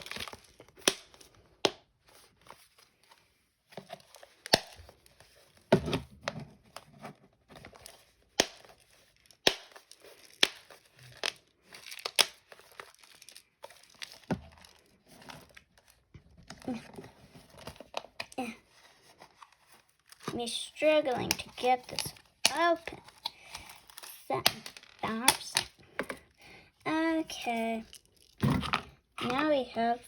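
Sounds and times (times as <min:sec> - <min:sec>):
plastic packaging crinkling: 0:00.0 - 0:00.8, 0:07.6 - 0:16.8.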